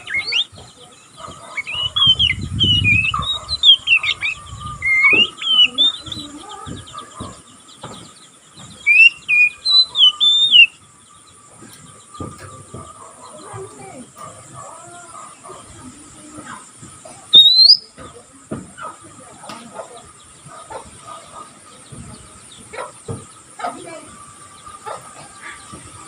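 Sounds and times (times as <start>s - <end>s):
magpie-robin chattering: 0.0s - 8.0s, 8.6s - 10.8s, 16.4s - 24.0s.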